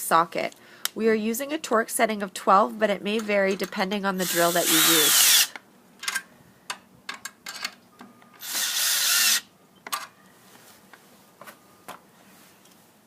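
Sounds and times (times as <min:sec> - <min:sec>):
power drill driving screw into wood: 0:04.2 - 0:05.6, 0:08.4 - 0:09.5.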